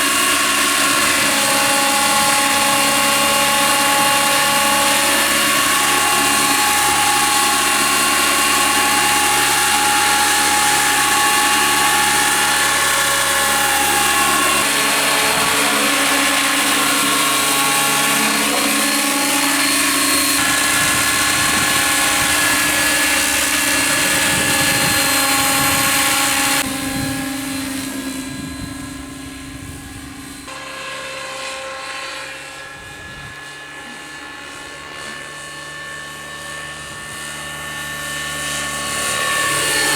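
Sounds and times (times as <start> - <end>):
model helicopter rotor whine: 0.0 - 39.9.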